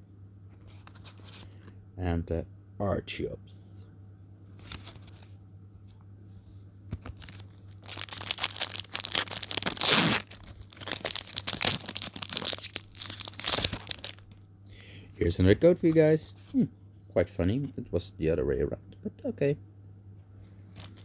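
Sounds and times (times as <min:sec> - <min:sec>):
foil wrapper tearing and crinkling: 0:07.0 - 0:14.4.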